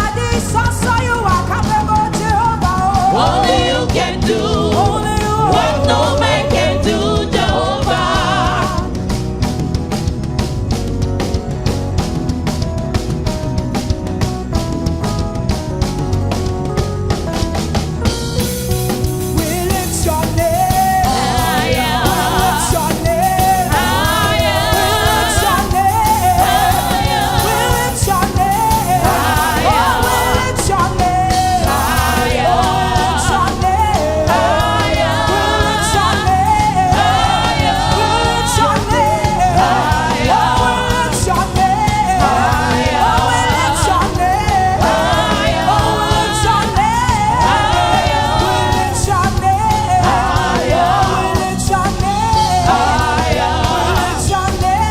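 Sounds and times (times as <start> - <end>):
gospel singing: 0.0 - 9.6, 19.2 - 54.9
band with drums and bass: 0.0 - 54.9.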